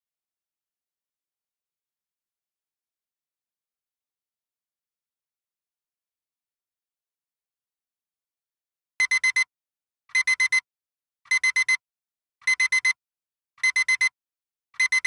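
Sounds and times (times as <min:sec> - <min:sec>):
digital alarm clock beeping: 0:09.0 - 0:09.5, 0:10.1 - 0:10.6, 0:11.3 - 0:11.8, 0:12.4 - 0:13.0, 0:13.6 - 0:14.1, 0:14.8 - 0:15.0.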